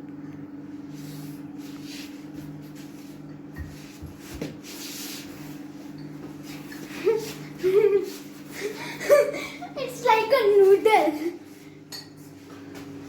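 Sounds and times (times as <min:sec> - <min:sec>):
steady electrical hum: 0:00.0 - 0:13.0
soft rubbing and scraping: 0:00.9 - 0:08.8.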